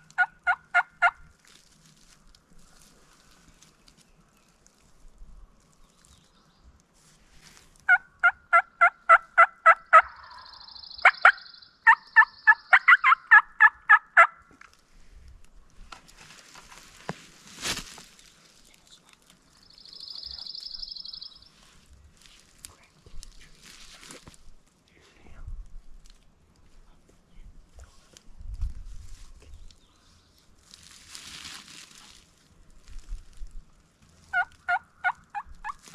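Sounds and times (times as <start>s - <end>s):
wild turkey yelping: 0.1s - 1.2s, 7.9s - 14.4s, 34.3s - 35.9s.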